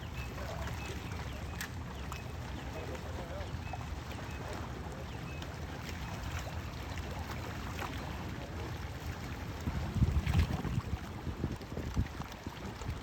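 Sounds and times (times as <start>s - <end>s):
water lapping against kayak hull: 0.0s - 13.0s
wind rumbling on microphone: 9.5s - 13.0s.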